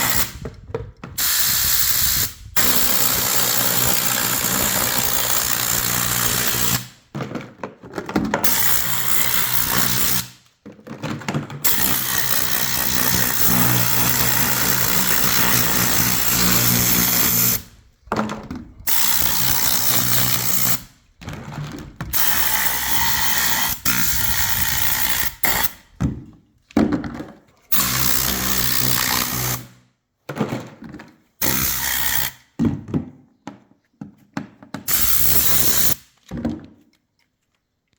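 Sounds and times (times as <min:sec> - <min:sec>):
air blow gun blasting: 0:00.0 - 0:00.4, 0:01.2 - 0:07.0, 0:08.4 - 0:10.4, 0:11.6 - 0:17.8, 0:18.8 - 0:20.9, 0:22.1 - 0:25.8, 0:27.7 - 0:29.8, 0:34.9 - 0:36.0.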